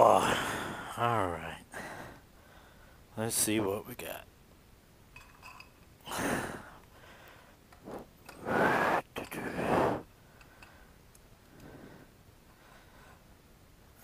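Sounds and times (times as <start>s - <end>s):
man straining breaths and grunts: 0.0s - 1.1s.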